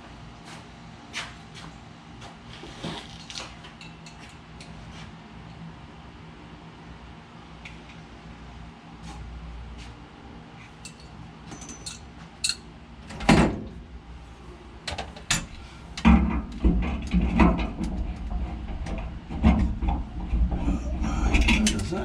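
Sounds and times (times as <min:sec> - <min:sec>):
tools and parts clunking: 0:10.8 - 0:13.5.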